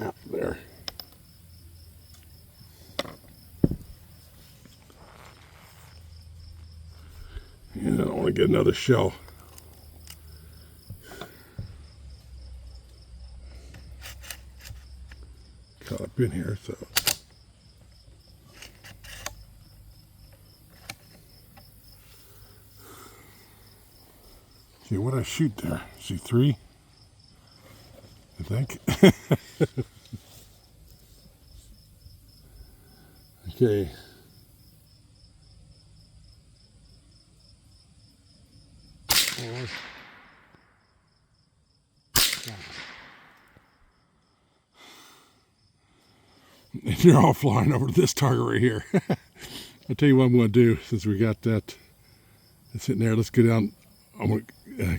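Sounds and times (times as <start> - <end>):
crickets chirping: 0.0 - 54.9
rifle bolt metallic clicks: 0.8 - 1.2, 16.9 - 17.3, 18.5 - 19.4, 39.1 - 40.2, 42.2 - 43.6.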